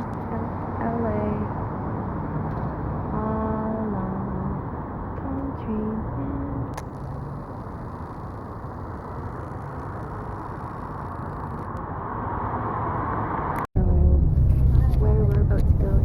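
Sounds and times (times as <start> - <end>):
car road and engine noise: 0.0 - 16.0.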